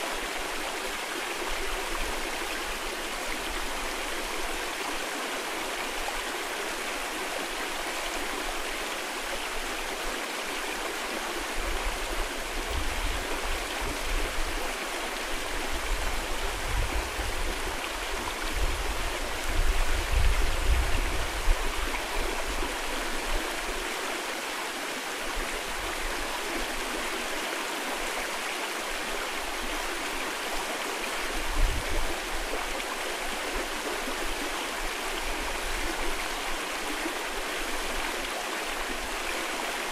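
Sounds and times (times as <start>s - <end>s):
stream rushing over rocks: 0.0s - 39.9s
wind buffeting microphone: 15.5s - 22.7s, 31.3s - 32.5s.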